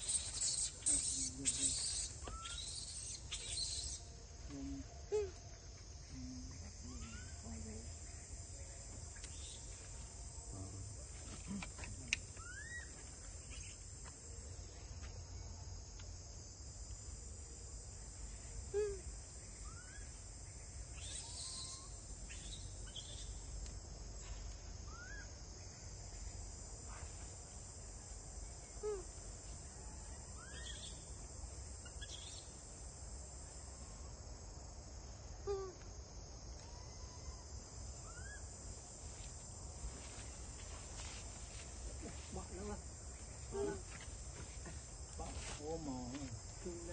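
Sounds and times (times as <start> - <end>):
short rising chirping calls: 0.0 - 4.1
insects chorus: 0.0 - 46.9.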